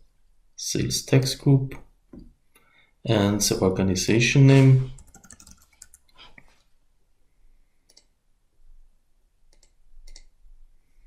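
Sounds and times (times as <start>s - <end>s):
computer mouse clicks: 5.0s - 6.2s, 7.9s - 8.2s, 9.5s - 10.4s.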